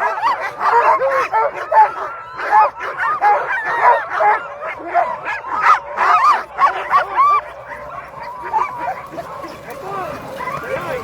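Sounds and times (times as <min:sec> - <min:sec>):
dogs barking and howling: 0:00.0 - 0:11.0.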